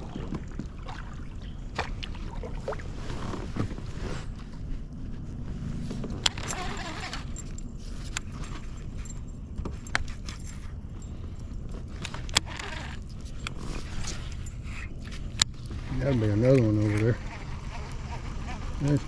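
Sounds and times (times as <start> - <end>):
fishing tackle clicking and rattling: 6.3 - 19.0.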